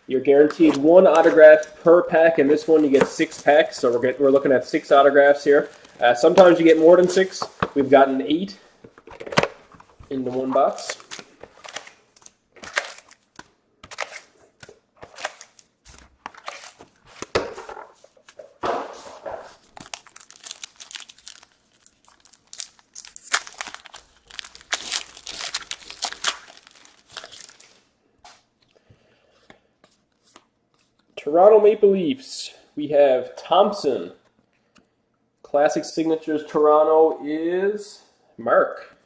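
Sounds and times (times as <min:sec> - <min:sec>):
plastic wrappers crinkling and tearing: 0:00.4 - 0:08.1, 0:09.8 - 0:17.3, 0:19.4 - 0:27.9.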